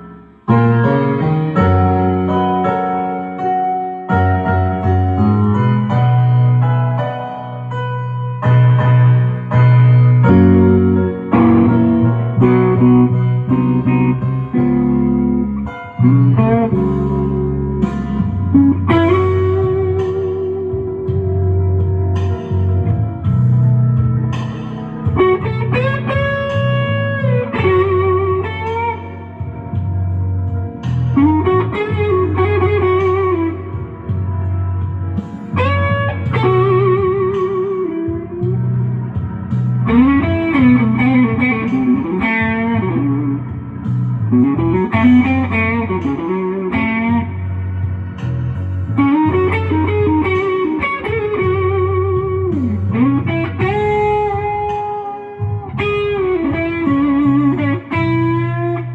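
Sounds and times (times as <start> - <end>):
bass line: 0.0 - 58.9
blues electric guitar lead: 0.0 - 58.9.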